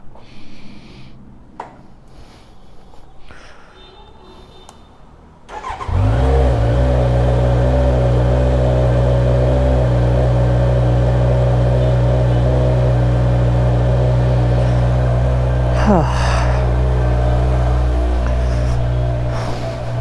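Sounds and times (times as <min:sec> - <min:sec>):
motorcycle engine cranking: 0:05.5 - 0:11.4
motorcycle engine idling: 0:06.5 - 0:20.0.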